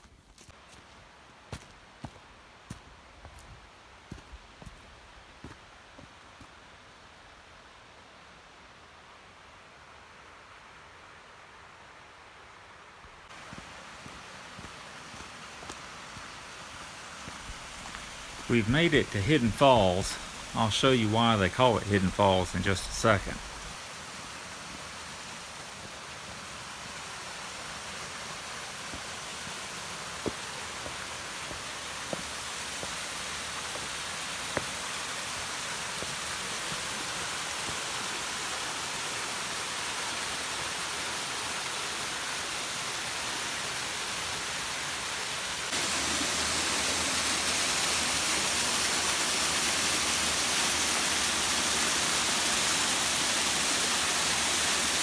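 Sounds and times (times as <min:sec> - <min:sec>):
waterfall roaring: 0:13.4 - 0:43.5, 0:45.7 - 0:55.0.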